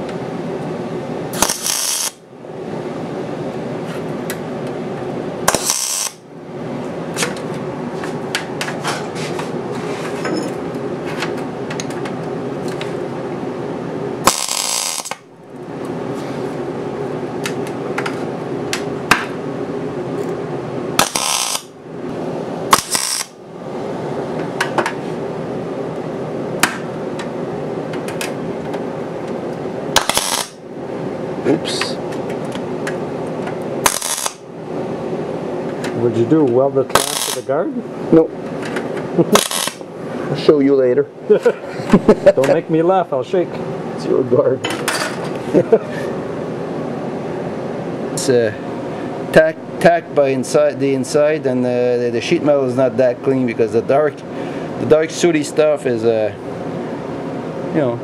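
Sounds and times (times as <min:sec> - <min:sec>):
welding arc crackling: 0:01.3 - 0:02.2, 0:05.5 - 0:06.3, 0:14.2 - 0:15.3, 0:21.0 - 0:21.7, 0:22.7 - 0:23.4, 0:30.0 - 0:30.6, 0:33.8 - 0:34.5, 0:36.9 - 0:37.5, 0:39.2 - 0:39.9
weld spatter pops: 0:01.4 - 0:02.1, 0:05.5 - 0:06.2, 0:14.3 - 0:15.2, 0:21.0 - 0:21.6, 0:22.7 - 0:23.3, 0:30.0 - 0:30.5.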